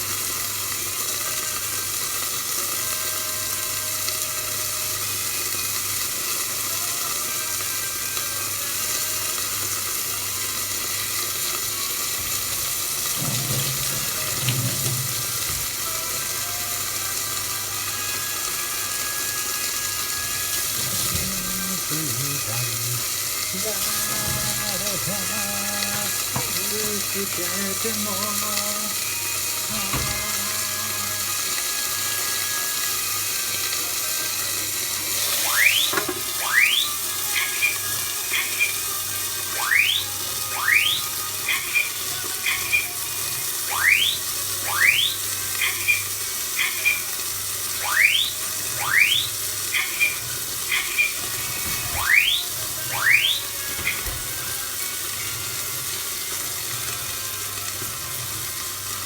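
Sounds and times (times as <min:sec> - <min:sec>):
fire alarm whooping and pulsing: 0:18.0 - 0:33.3, 0:35.4 - 0:54.1.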